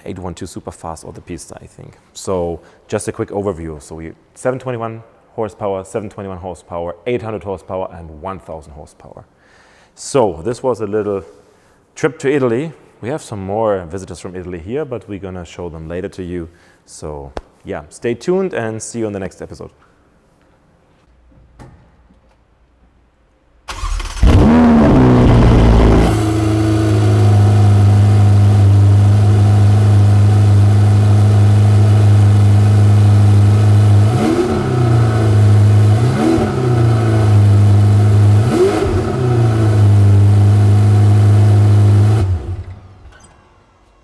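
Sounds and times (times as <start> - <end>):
sports car engine starting: 23.7 - 43.1
car engine idling and revving: 23.9 - 42.8.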